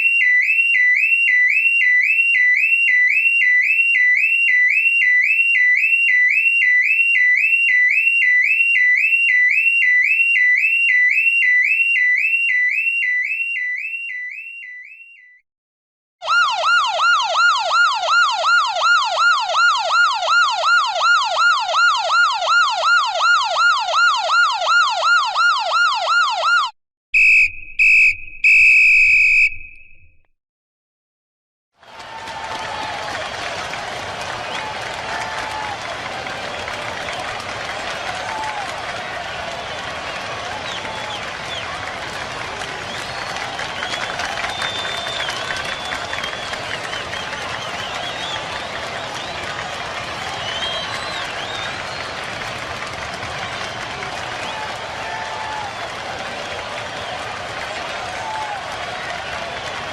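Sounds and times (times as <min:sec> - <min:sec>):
lower yelping siren: 0:16.2 - 0:29.5
short high siren blasts: 0:16.2 - 0:30.1
high warbling electronic siren: 0:16.2 - 0:30.2.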